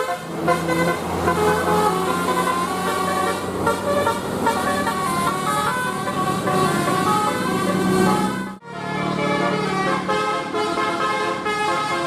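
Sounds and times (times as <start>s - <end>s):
multi-tone air horn tune: 0.0s - 12.0s.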